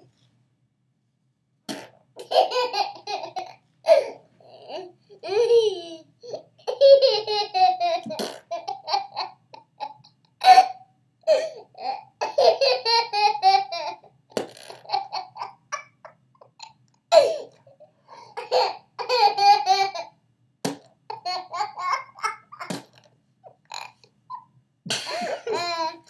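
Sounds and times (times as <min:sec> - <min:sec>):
baby giggling: 0:02.2 - 0:14.0, 0:14.7 - 0:17.4, 0:23.7 - 0:26.0
person laughing: 0:24.9 - 0:26.0.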